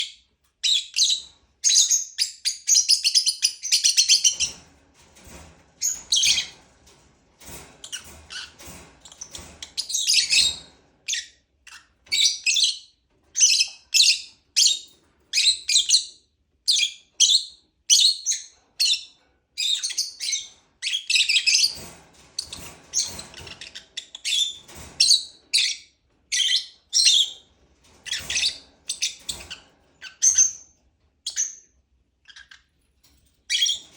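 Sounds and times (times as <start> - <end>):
bird chirping: 0.0 - 4.6.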